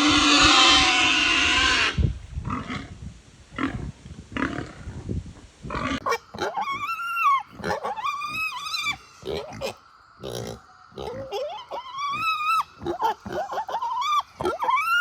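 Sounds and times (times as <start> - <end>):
pig squealing: 0.0 - 2.0, 5.9 - 15.0
pig grunting: 5.7 - 15.0.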